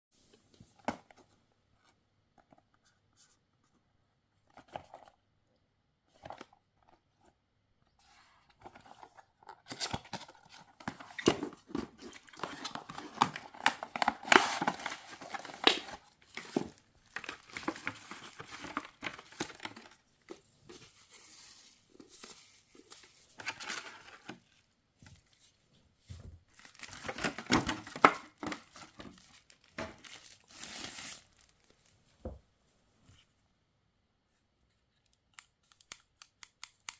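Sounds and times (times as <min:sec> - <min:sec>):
packaging tearing and rustling: 0:08.8 - 0:19.9, 0:26.6 - 0:31.7.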